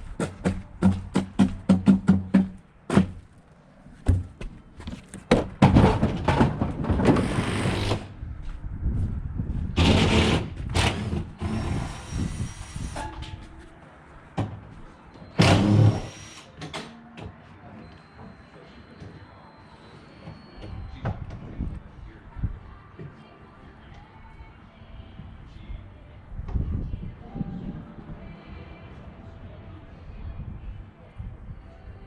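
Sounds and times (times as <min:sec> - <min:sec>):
heavy appliance scraping and rumbling: 0:05.7 - 0:08.2, 0:08.8 - 0:13.5.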